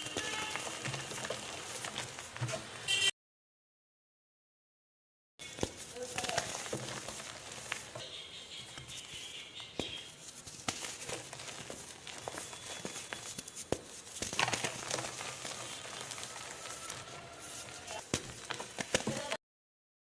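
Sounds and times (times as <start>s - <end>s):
chalk crunching and crackling: 0.0s - 2.7s, 5.4s - 19.4s
chalk pieces snapping: 5.4s - 19.3s.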